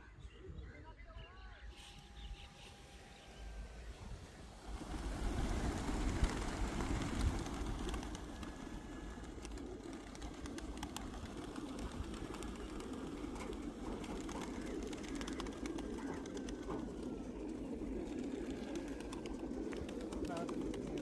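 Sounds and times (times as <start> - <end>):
pigeons cooing: 4.6 - 21.0.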